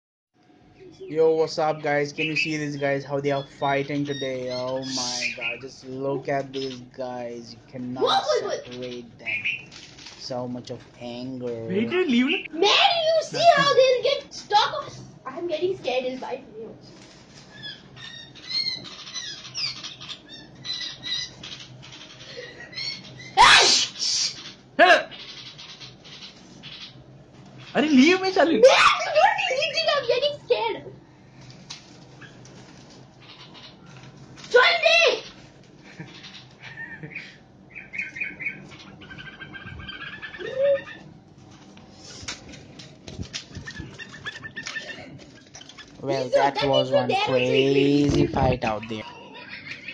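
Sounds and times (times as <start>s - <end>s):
birds chirping and twittering: 0.6s - 49.9s
harsh bird call: 1.7s - 5.7s, 22.2s - 27.0s
wing flutters: 9.5s - 10.4s, 38.1s - 46.4s
wing flaps: 41.6s - 46.0s.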